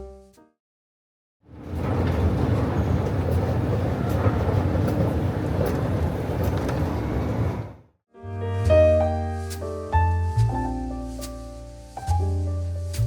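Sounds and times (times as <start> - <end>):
vehicle rumbling in motion: 1.5 - 7.8.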